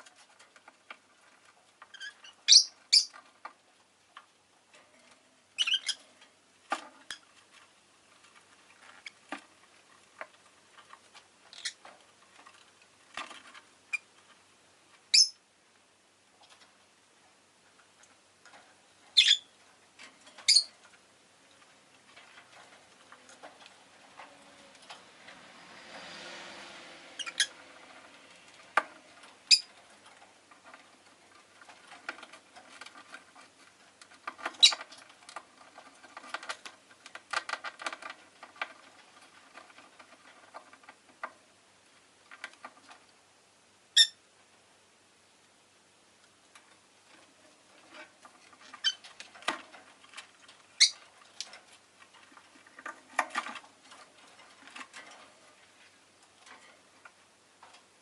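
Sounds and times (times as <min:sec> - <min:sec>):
bird chirping: 0:01.9 - 0:03.2, 0:05.6 - 0:06.0, 0:15.1 - 0:15.4, 0:19.1 - 0:19.5, 0:20.4 - 0:20.7, 0:27.2 - 0:27.5, 0:29.5 - 0:29.7, 0:50.8 - 0:51.0.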